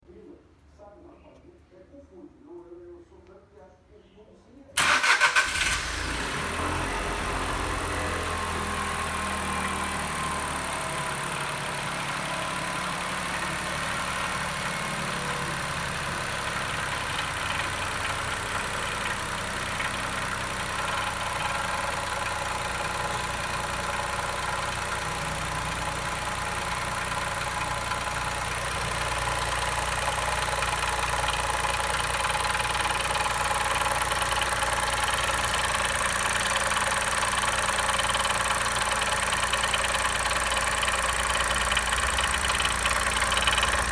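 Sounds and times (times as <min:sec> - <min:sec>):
car engine idling: 0:04.8 - 0:43.9.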